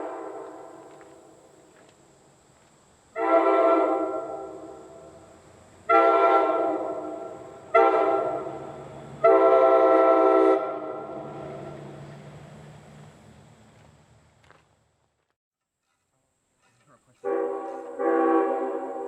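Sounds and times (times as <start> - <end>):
locomotive air horn blasts: 0.0 - 0.9, 3.1 - 5.2, 5.9 - 11.8, 17.2 - 19.0.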